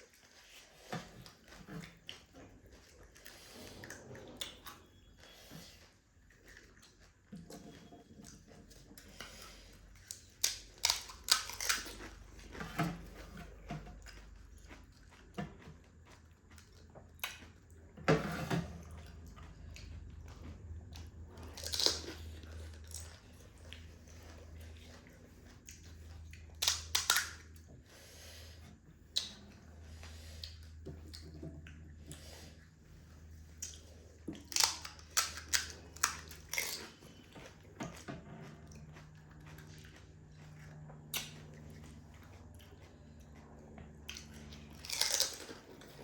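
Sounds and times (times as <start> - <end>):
quiet chewing: 0.0 - 46.0
crisp shells crunching: 44.7 - 45.6.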